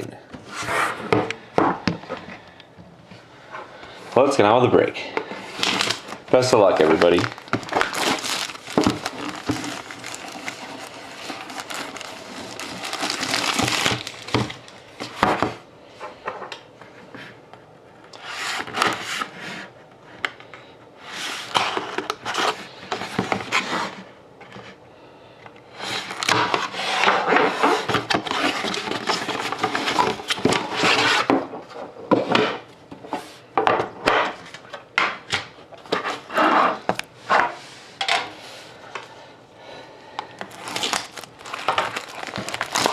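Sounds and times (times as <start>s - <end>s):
packaging rustling and tearing: 5.4s - 15.2s, 25.9s - 26.8s, 27.6s - 31.3s, 40.4s - 42.9s.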